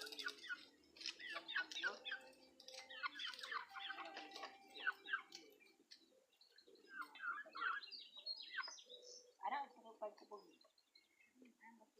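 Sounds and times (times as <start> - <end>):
small birds chirping: 0.0 - 11.9.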